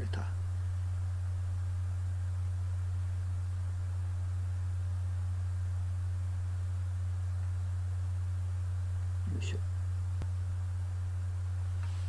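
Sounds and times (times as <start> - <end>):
low electrical hum: 0.0 - 12.0
faint hiss: 11.5 - 12.0.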